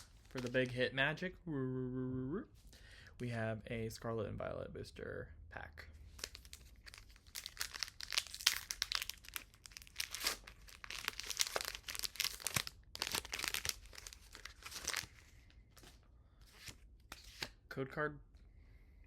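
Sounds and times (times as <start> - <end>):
foil wrapper crinkling and tearing: 6.2 - 15.1.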